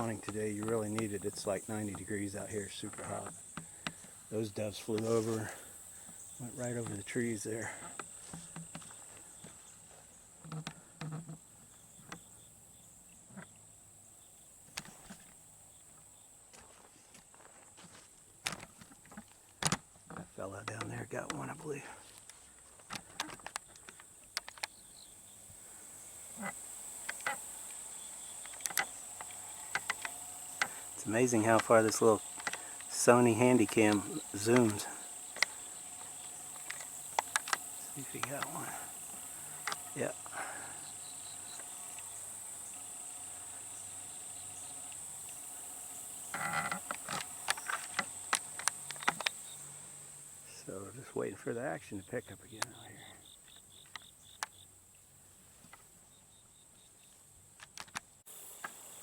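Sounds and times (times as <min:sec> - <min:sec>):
faint clicks: 0:00.0 - 0:11.4, 0:18.4 - 0:49.8, 0:52.3 - 0:55.0
field insects chirring: 0:00.0 - 0:59.0.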